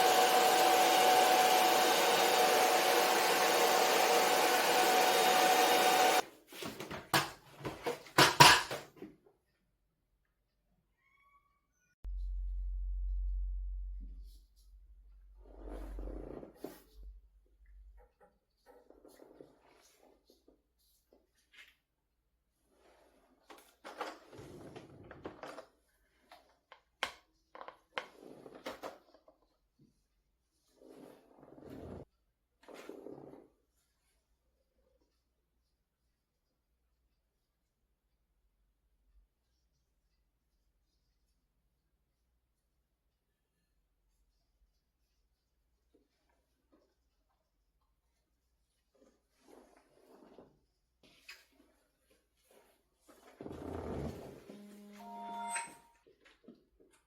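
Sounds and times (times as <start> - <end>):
hair dryer blowing: 0.0 - 6.2
handling rustling and scraping: 6.2 - 9.2.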